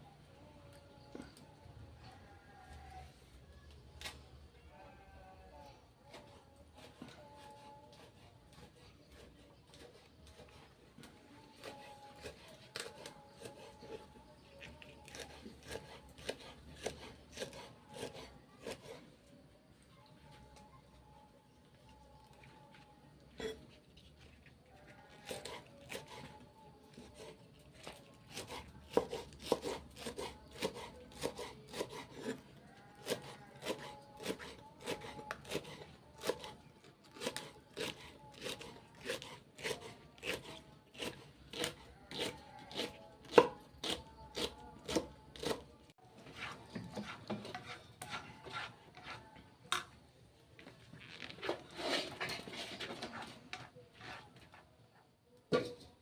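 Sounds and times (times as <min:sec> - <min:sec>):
knife chopping on cutting board: 0:28.3 - 0:32.4, 0:37.2 - 0:45.6, 0:46.4 - 0:49.2
soft scraping and rubbing: 0:45.9 - 0:56.0.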